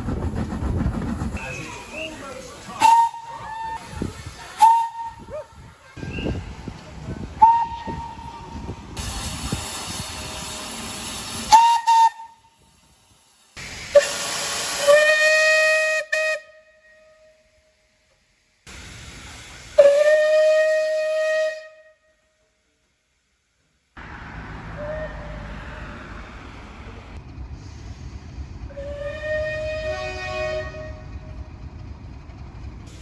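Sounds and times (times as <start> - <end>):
steam hissing: 0.0 - 16.0, 18.7 - 21.2, 32.8 - 33.0
steam locomotive whistle: 2.8 - 3.9, 4.6 - 5.4, 7.4 - 12.7, 13.9 - 17.5, 19.8 - 22.3, 24.7 - 25.6, 28.7 - 31.2.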